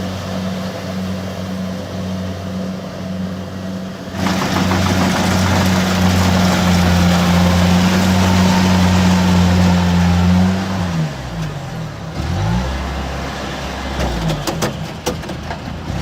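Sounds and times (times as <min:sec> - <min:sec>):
harvesting machine engine running: 0:00.0 - 0:16.0
rushing clatter of machinery: 0:04.1 - 0:10.2, 0:13.9 - 0:16.0.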